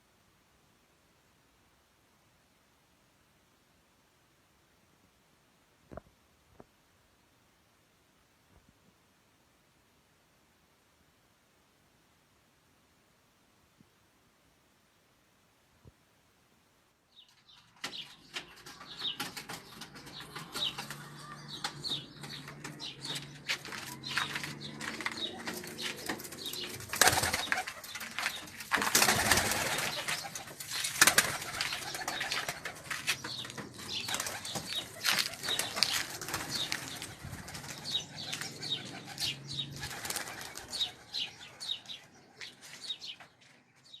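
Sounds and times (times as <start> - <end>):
wings flapping: 17.8 - 41.5
pigeons cooing: 18.6 - 42.0.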